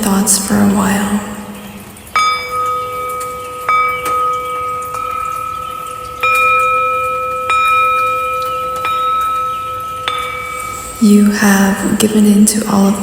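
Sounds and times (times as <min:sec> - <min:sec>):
bell-like chime tones: 0:02.1 - 0:12.0.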